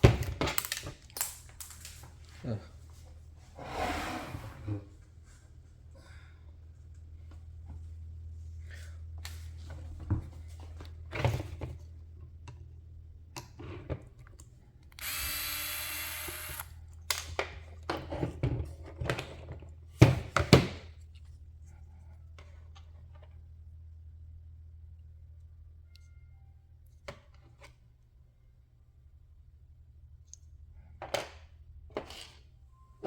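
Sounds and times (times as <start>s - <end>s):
small power tool running: 15.0s - 16.7s.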